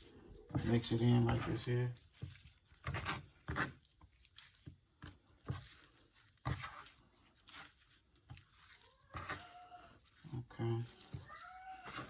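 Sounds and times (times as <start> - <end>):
wet squishing and crunching: 0.0 - 12.0.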